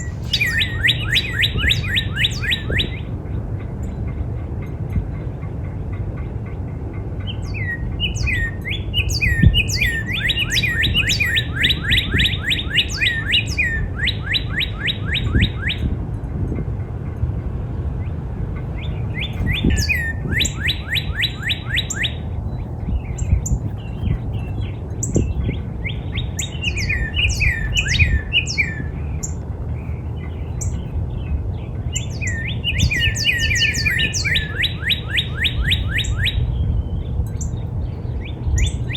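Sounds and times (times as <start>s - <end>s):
bird singing down-slurred whistles: 0.0s - 3.1s, 7.3s - 15.9s, 19.1s - 22.2s, 23.1s - 29.4s, 31.6s - 37.6s
steady low rumble: 0.0s - 14.0s, 15.2s - 38.9s.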